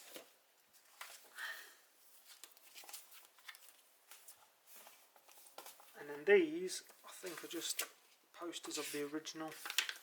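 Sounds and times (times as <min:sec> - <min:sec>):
paper posters rustling: 0:02.0 - 0:10.0.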